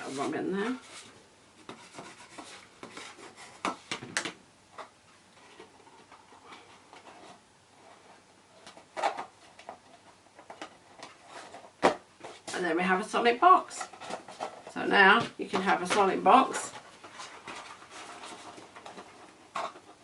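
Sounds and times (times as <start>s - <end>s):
paper rubbing and rustling: 16.4s - 20.0s.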